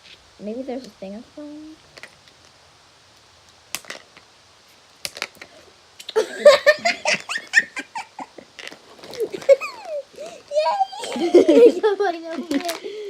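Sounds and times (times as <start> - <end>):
girls laughing: 6.1 - 8.5, 9.1 - 13.0.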